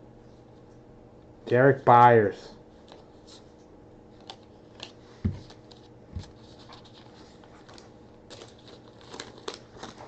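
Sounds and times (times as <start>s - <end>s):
cards set down thumps: 4.2s - 7.0s
cards ticking and rustling: 4.2s - 10.0s.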